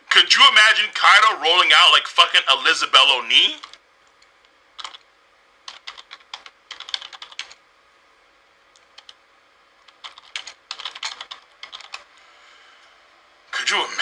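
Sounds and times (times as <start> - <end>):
typing on computer keyboard: 4.8 - 5.0, 5.7 - 7.6, 8.8 - 9.2, 9.8 - 12.1.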